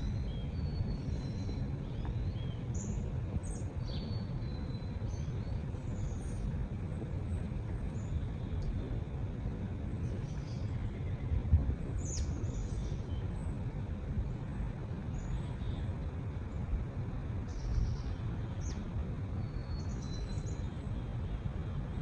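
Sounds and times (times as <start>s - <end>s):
steady low rumble: 0.0s - 22.0s
birds chirping: 17.4s - 22.0s.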